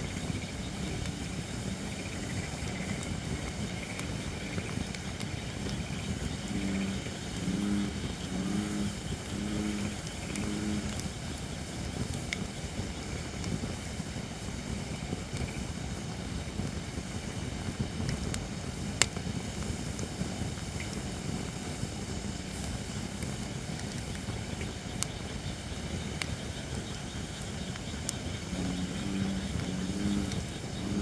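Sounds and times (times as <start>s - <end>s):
campfire low rush: 0.0s - 31.0s
fire crackles and pops: 0.0s - 31.0s.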